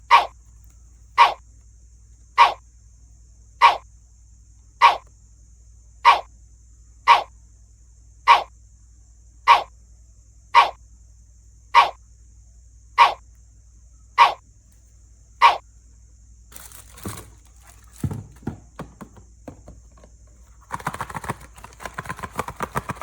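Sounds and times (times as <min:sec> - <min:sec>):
faint low hum: 0:00.0 - 0:23.0
short mechanical dog-like bark: 0:00.1 - 0:00.3, 0:01.2 - 0:01.4, 0:02.4 - 0:02.6, 0:03.6 - 0:03.8, 0:04.8 - 0:05.1, 0:06.0 - 0:06.3, 0:07.1 - 0:07.3, 0:08.3 - 0:08.5, 0:09.5 - 0:09.7, 0:10.6 - 0:10.8, 0:11.8 - 0:12.0, 0:13.0 - 0:13.2, 0:14.2 - 0:14.4.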